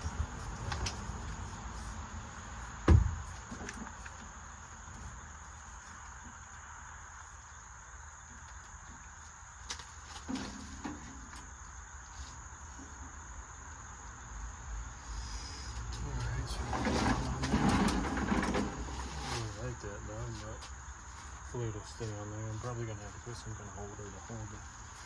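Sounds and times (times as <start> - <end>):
heavy thump: 2.8 - 3.4
high-pitched tone and hiss: 11.6 - 17.4
metal knocks and clanks: 16.3 - 19.2.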